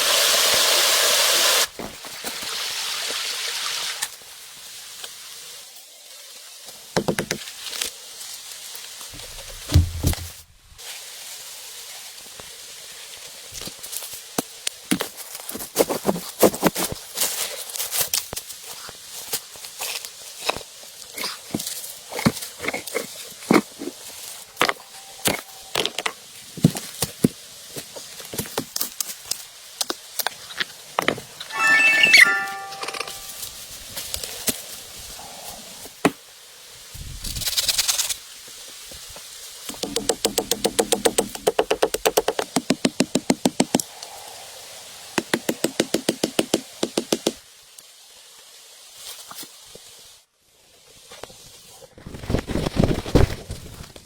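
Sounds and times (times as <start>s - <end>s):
faint steady hiss: 16.8s - 51.9s
sharp knocks and snaps: 39.7s - 43.9s.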